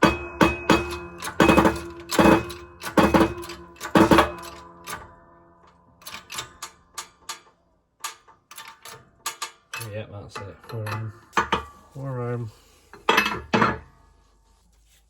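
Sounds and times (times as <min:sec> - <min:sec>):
hammer striking steel: 0:00.0 - 0:05.2
metal ringing: 0:00.0 - 0:12.0, 0:13.0 - 0:14.0.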